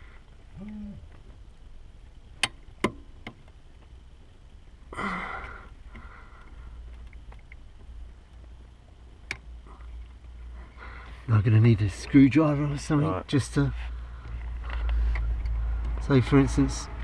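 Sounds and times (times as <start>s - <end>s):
breathy exhale: 4.9s - 6.8s, 10.6s - 11.2s.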